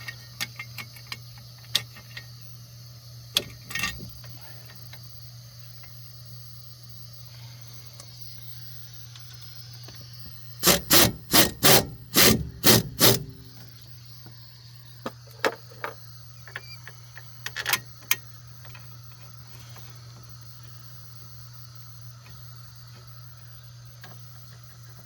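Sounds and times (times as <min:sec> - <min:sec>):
steady low hum: 0:01.0 - 0:15.1.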